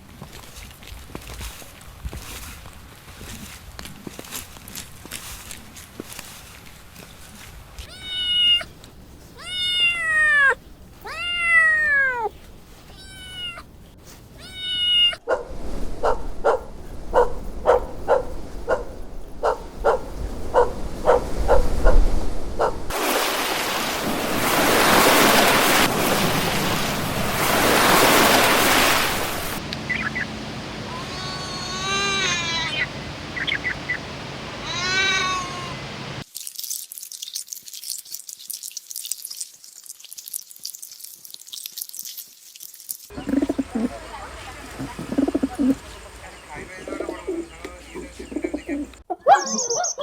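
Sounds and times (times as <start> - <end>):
cat meowing: 7.8 - 8.7, 9.3 - 13.7, 14.4 - 15.2, 30.8 - 32.9, 34.6 - 35.8.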